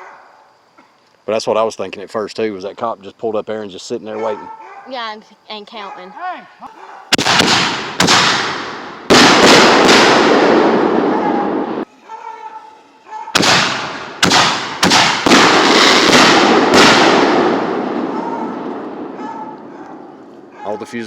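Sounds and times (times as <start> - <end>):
fireworks bangs: 7.1 - 11.9, 13.2 - 21.0.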